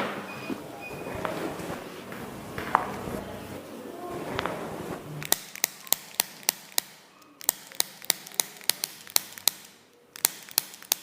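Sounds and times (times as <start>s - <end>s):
sharp joint clicks: 5.2s - 11.0s.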